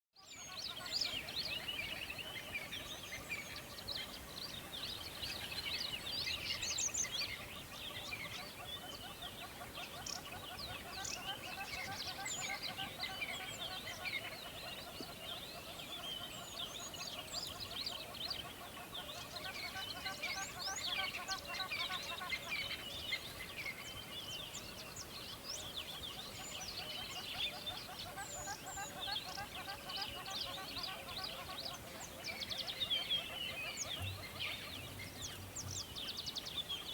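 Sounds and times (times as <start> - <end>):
songbirds chirping: 0.2 - 36.9.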